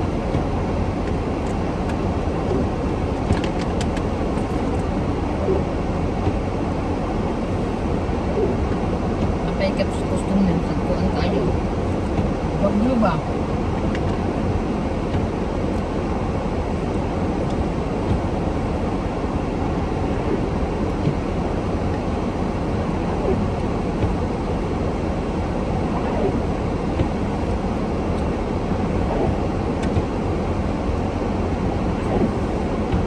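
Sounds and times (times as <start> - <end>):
vehicle road noise rumble: 0.0 - 33.0.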